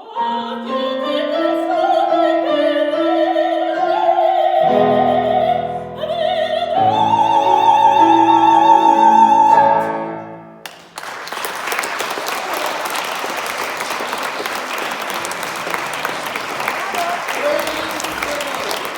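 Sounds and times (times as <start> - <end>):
piano: 0.0 - 18.9
audience applause: 10.6 - 18.9.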